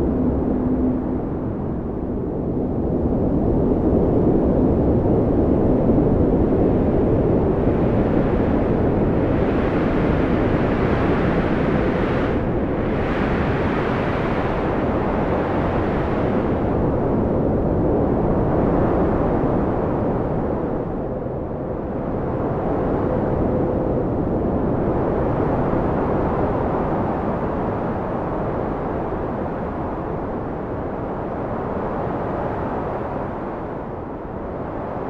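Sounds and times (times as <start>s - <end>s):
strong wind blowing: 0.0s - 35.0s.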